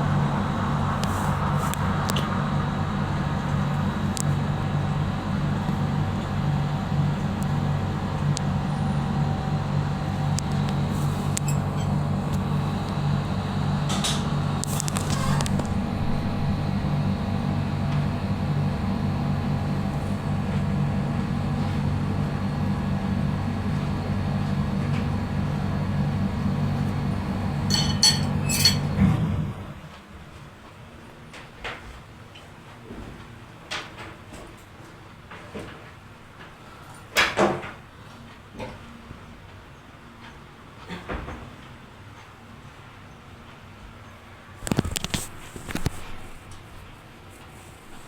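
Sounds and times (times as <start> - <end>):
refrigerator compressor hum: 0.0 - 29.8.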